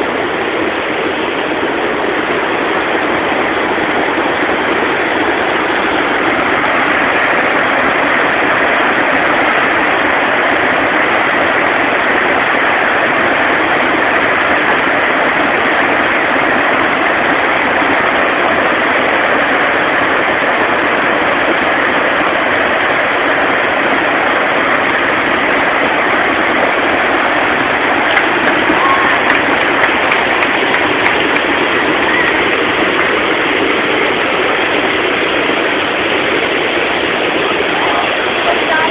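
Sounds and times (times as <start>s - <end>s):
water rushing over a weir: 0.0s - 38.9s.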